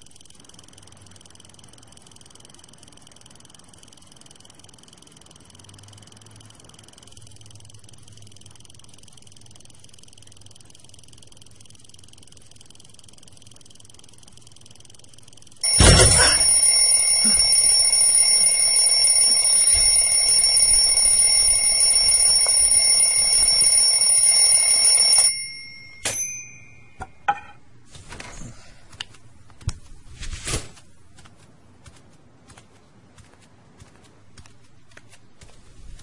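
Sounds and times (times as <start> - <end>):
alarm clock bell ringing: 0.0 - 27.3.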